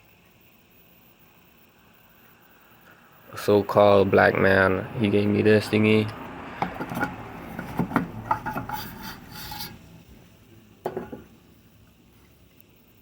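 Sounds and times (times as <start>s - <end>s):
hard object scraping and clicking: 6.6s - 9.8s.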